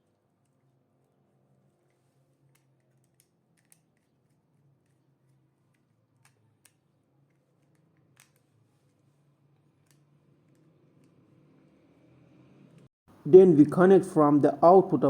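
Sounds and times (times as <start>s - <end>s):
small clicks of hand tools: 1.8s - 5.0s, 5.7s - 8.5s.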